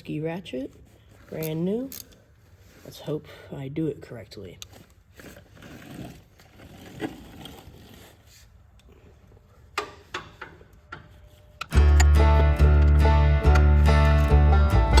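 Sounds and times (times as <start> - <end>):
ratchet clicking and scraping: 9.8 - 13.6
guitar music: 11.7 - 15.0.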